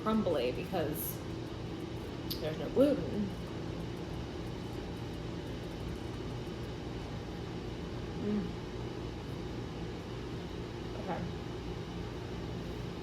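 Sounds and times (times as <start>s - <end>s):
low background hum: 0.0s - 13.0s
person humming: 8.2s - 8.6s.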